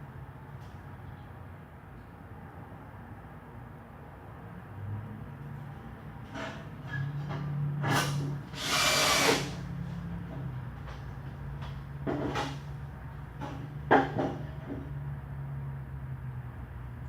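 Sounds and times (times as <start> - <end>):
power drill driving screws: 7.8 - 9.6.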